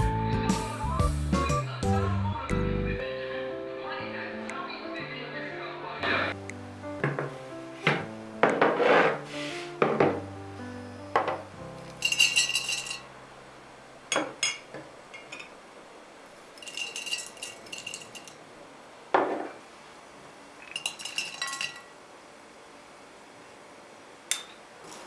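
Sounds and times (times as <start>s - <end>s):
dishes knocking down: 7.0s - 8.8s, 9.8s - 10.2s, 11.2s - 13.0s, 14.1s - 15.5s
utensil clinking against bowl: 11.9s - 13.1s, 16.6s - 18.4s, 20.6s - 21.9s, 24.3s - 24.6s.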